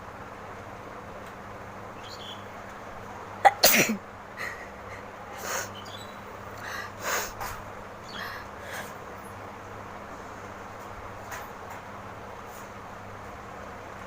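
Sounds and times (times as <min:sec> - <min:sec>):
breathy sounds: 0:06.6 - 0:07.4, 0:08.1 - 0:09.0.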